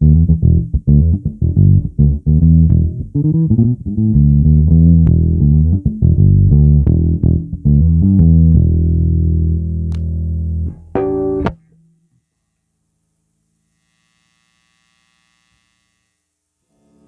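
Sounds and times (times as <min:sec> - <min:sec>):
electric bass notes: 0:00.0 - 0:12.2.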